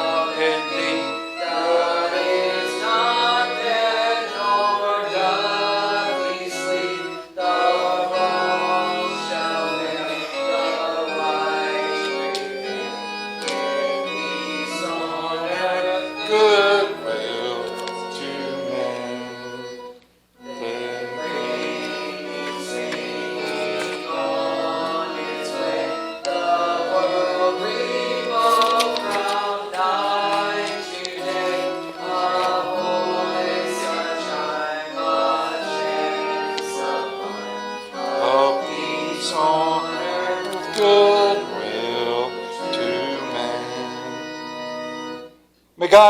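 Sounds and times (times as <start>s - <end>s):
person singing: 0.0s - 19.8s, 20.5s - 44.2s
organ chords: 0.0s - 46.0s.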